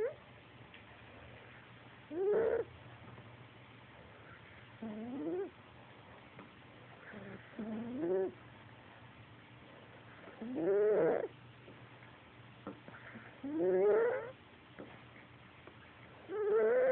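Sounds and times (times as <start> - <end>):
cat snoring with rising calls: 2.1 - 2.7, 4.8 - 5.5, 7.0 - 8.4, 10.2 - 11.3, 13.0 - 14.4, 16.3 - 16.9.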